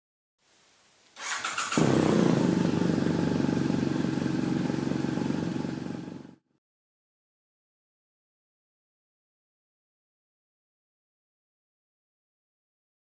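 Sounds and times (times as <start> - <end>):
motorcycle starter crank: 1.2 - 2.3
motorcycle engine running: 1.2 - 6.4.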